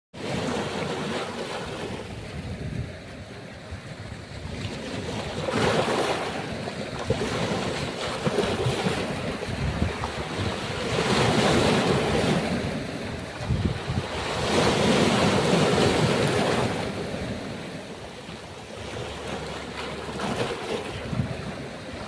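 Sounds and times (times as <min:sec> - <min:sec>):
ocean waves breaking on shore: 0:00.2 - 0:22.0
wind buffeting microphone: 0:01.7 - 0:22.0.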